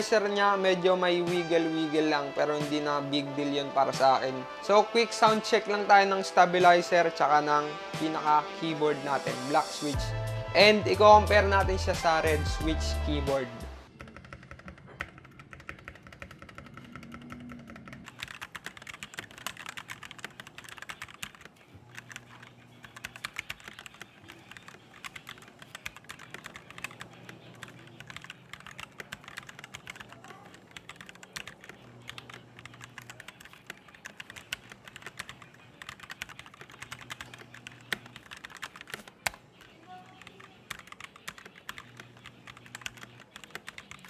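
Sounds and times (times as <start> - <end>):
mechanical keyboard typing: 13.9 - 44.0.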